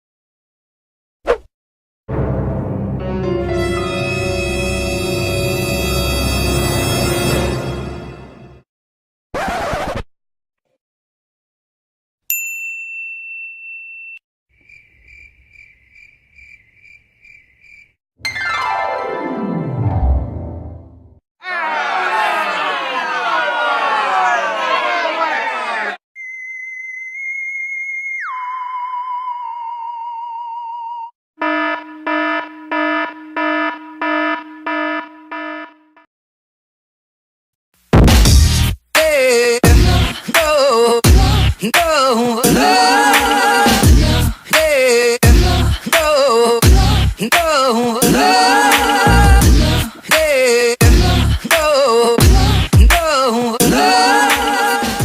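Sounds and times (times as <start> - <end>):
bright ding: 12.3 - 14.2
cricket chirping: 14.6 - 18.0
buzzing alarm blasts: 31.4 - 36.0.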